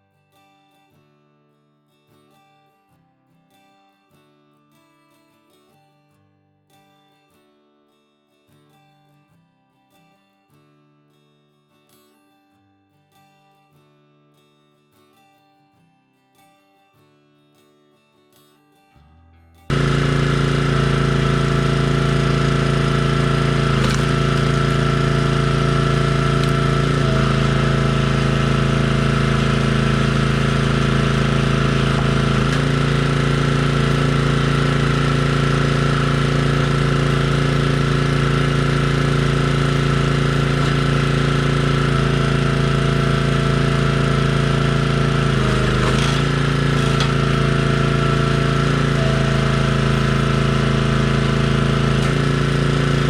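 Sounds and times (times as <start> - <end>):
small gas engine running: 19.7 - 53.0.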